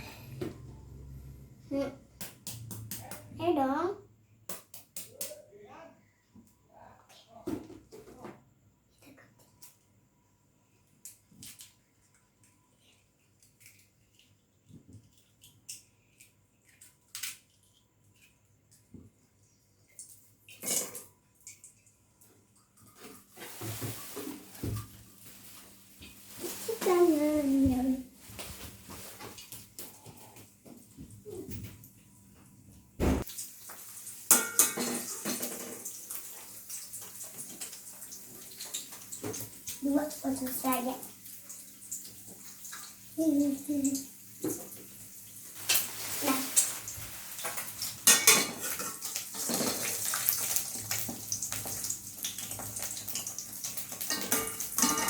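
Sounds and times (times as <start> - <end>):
rustling and scraping: 22.8 - 30.9
kitchen utensils clattering: 34.3 - 36.2, 45.6 - 50.6, 53.0 - 55.0
metal utensil clink: 54.0 - 55.0.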